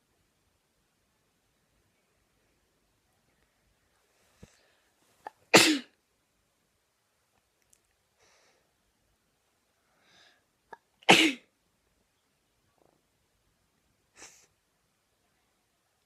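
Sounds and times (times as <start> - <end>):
faint breath: 4.0 - 5.1, 8.2 - 8.8, 9.7 - 10.6.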